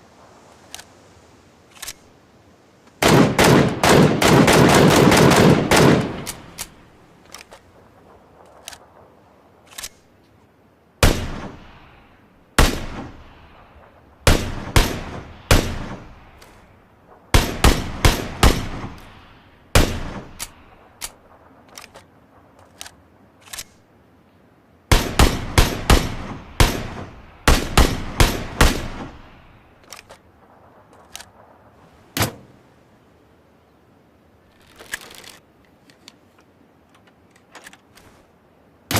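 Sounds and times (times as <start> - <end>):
automatic gunfire burst: 3.0 - 6.6
single gunshots with echo: 11.0 - 12.0, 12.6 - 16.6, 17.2 - 20.6, 24.9 - 29.6.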